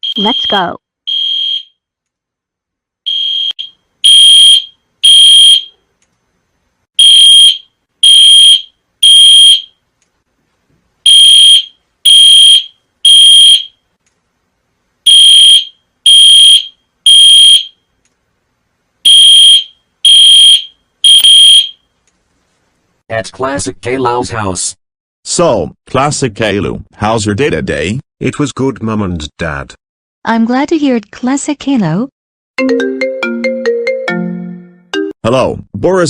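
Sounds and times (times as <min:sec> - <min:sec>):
fire alarm high beeps: 0:00.0 - 0:01.8, 0:03.1 - 0:05.8, 0:07.0 - 0:09.7, 0:11.1 - 0:13.8, 0:15.1 - 0:17.8, 0:19.1 - 0:21.8.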